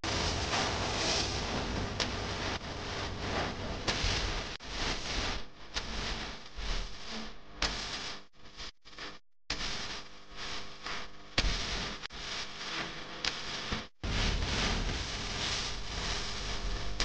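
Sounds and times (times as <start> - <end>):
rushing rustling noise: 0.0 - 5.4.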